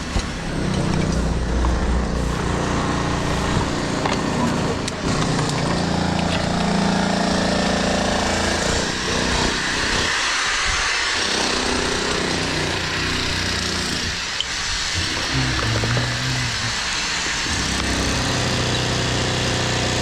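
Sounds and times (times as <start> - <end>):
machinery running with engine hum: 0.0 - 7.4, 15.0 - 20.0.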